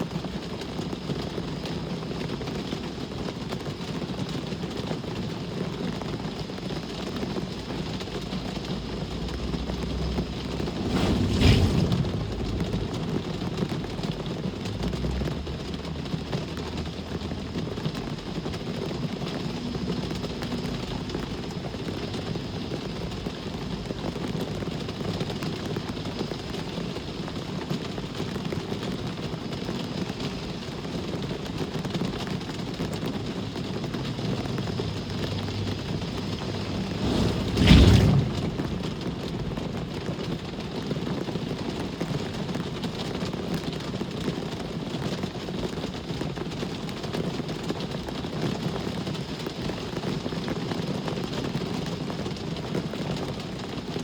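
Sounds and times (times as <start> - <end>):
steady rain: 0.0 - 54.0
vehicle engine rumble: 0.1 - 44.2
traffic passing: 6.8 - 26.2, 32.1 - 40.4.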